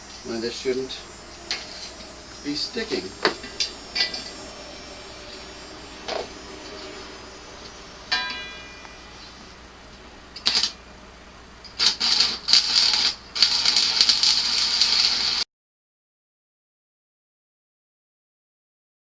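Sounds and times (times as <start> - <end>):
electric arc welding crackle: 0.0 - 15.5
metal clank: 8.1 - 9.4.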